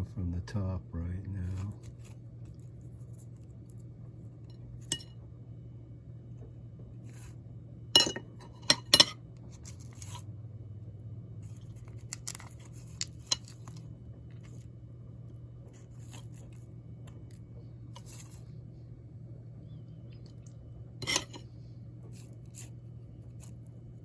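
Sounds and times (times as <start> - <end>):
low hum: 0.0 - 24.0
utensil clinking on pie dish: 8.0 - 9.2, 21.0 - 21.4.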